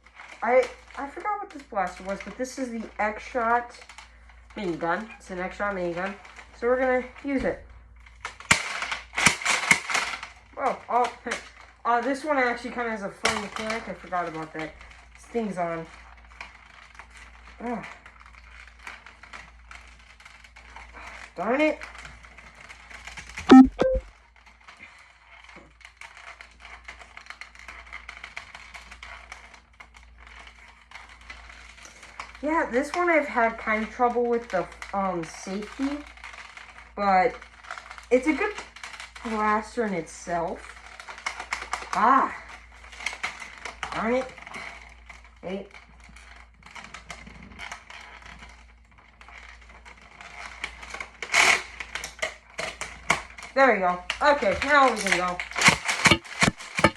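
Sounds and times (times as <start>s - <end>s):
toy blaster clicking and rattling: 8.0s - 23.5s, 47.7s - 56.9s
toy blaster plastic clicks: 8.3s - 10.3s.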